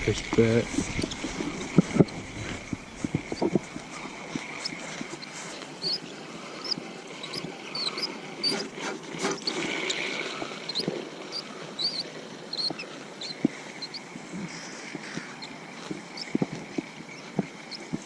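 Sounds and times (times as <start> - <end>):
rustling near microphone: 0.0 - 11.0
small birds chirping: 0.0 - 18.0.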